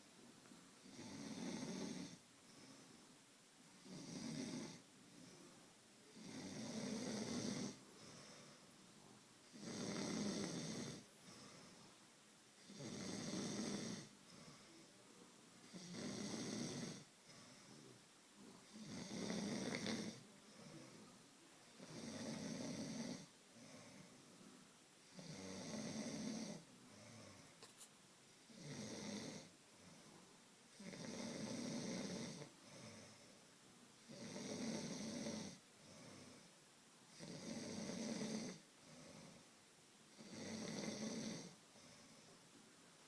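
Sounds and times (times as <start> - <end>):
man snoring: 0.8 - 2.2, 3.8 - 5.2, 6.1 - 8.4, 9.5 - 11.6, 12.6 - 14.6, 15.6 - 17.9, 18.6 - 21.0, 21.7 - 24.1, 25.0 - 27.4, 28.4 - 30.0, 30.7 - 33.2, 34.0 - 36.5, 37.1 - 39.4, 40.1 - 42.0
soft breathing: 2.1 - 3.9, 4.8 - 6.2, 7.7 - 9.3, 10.9 - 12.2, 14.0 - 15.4, 17.0 - 18.8, 19.4 - 22.4, 23.2 - 25.2, 26.5 - 28.5, 29.3 - 30.4, 32.3 - 33.9, 35.4 - 36.6, 41.4 - 42.8.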